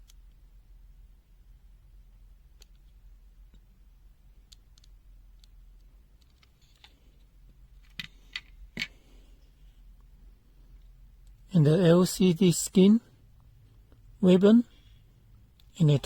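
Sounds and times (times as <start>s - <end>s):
faint steady low hum: 0.0s - 16.0s
plastic parts clicking: 4.5s - 9.0s.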